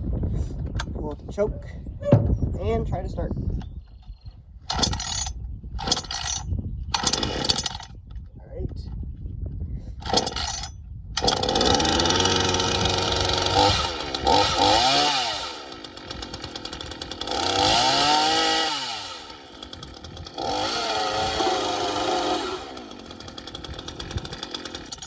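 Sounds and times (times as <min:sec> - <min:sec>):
chainsaw pull-started and revving: 0:04.7 - 0:07.9, 0:10.0 - 0:25.0.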